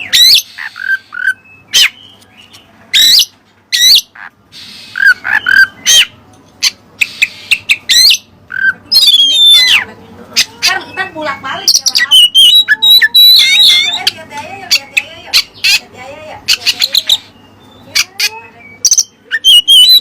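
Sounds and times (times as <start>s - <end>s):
magpie-robin singing whistled notes: 0.0s - 6.2s, 7.0s - 9.8s, 10.8s - 14.2s, 16.5s - 20.0s.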